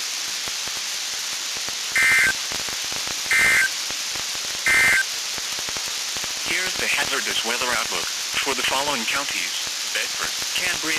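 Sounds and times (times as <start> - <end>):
radio hiss: 1.6 - 10.9
buzzy digital data bursts: 1.9 - 2.4, 3.3 - 3.8, 4.6 - 5.1.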